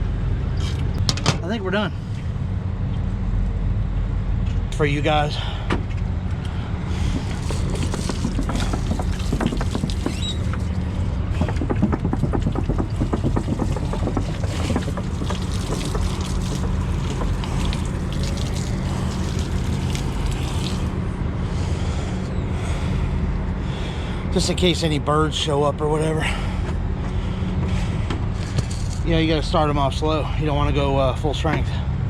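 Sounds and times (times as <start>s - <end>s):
clicks and rattles: 7.1s - 17.8s, 28.4s - 29.1s.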